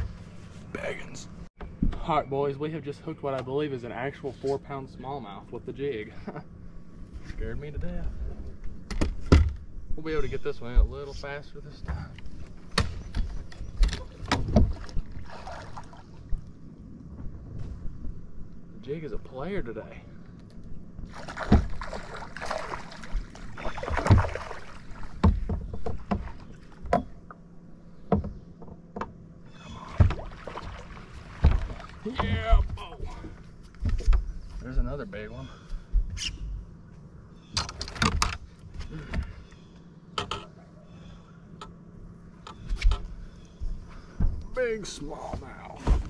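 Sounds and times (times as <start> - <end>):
water splashing: 14.6 - 16.3, 21.0 - 26.9, 29.6 - 32.6
knocks against boat hull: 25.2 - 27.2, 28.0 - 29.2.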